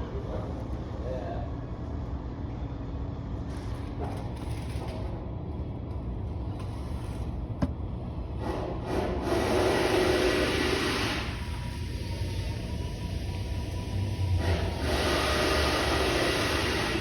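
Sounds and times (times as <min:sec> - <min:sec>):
steady low hum: 0:00.0 - 0:09.3.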